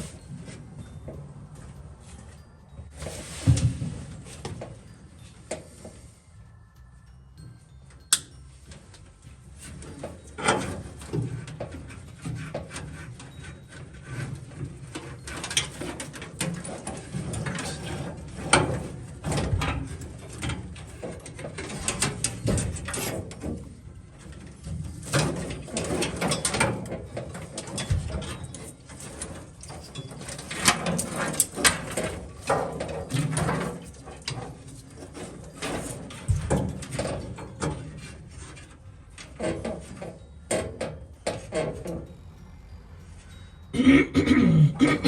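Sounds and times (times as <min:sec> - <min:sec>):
tools and metal parts rattling: 0:09.5 - 0:42.2.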